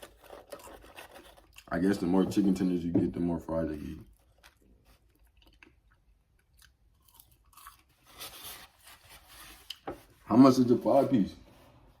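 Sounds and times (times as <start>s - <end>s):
person chewing crunchy food: 0.0s - 2.5s, 4.0s - 8.3s.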